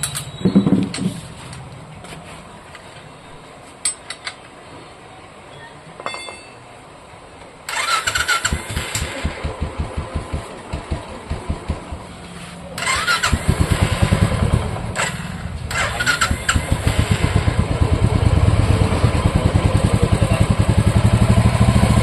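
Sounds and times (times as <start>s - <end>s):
starter motor cranking engine: 7.7s - 12.0s, 12.8s - 22.0s.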